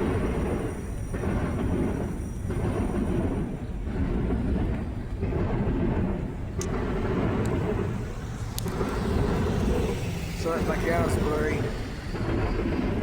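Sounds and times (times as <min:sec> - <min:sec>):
freight train wheels rumbling: 0:00.0 - 0:13.0.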